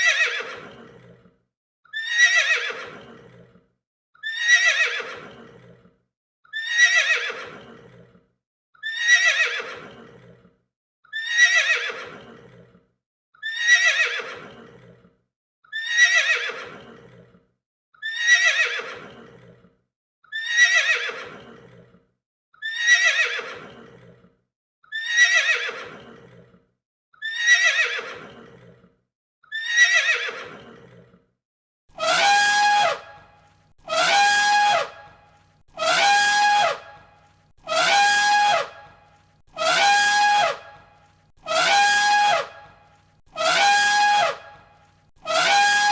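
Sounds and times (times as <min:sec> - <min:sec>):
horse whinny: 0:00.0 - 0:01.3, 0:01.9 - 0:03.6, 0:04.2 - 0:05.8, 0:06.5 - 0:08.2, 0:08.8 - 0:10.4, 0:11.1 - 0:12.8, 0:13.4 - 0:15.0, 0:15.7 - 0:17.4, 0:18.0 - 0:19.7, 0:20.3 - 0:22.0, 0:22.6 - 0:24.2, 0:24.9 - 0:26.6, 0:27.2 - 0:28.8, 0:29.5 - 0:31.1, 0:32.0 - 0:33.1, 0:33.8 - 0:35.0, 0:45.2 - 0:45.9
elephant trumpet call: 0:32.0 - 0:33.1, 0:33.9 - 0:35.0, 0:35.8 - 0:36.9, 0:37.7 - 0:38.7, 0:39.6 - 0:40.6, 0:41.5 - 0:42.6, 0:43.4 - 0:44.4, 0:45.2 - 0:45.9.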